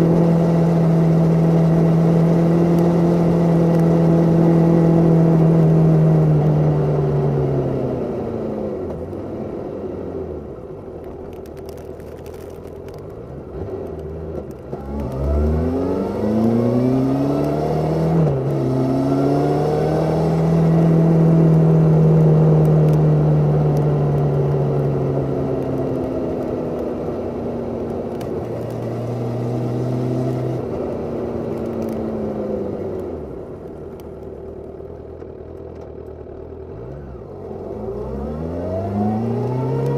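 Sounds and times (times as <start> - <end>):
motorcycle engine revving: 14.4 - 32.8.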